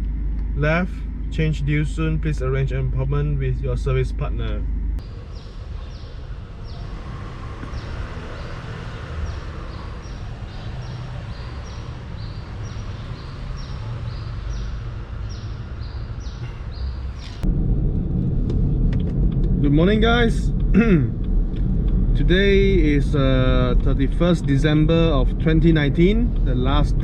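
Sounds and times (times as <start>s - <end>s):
low rumble: 0.0s - 27.0s.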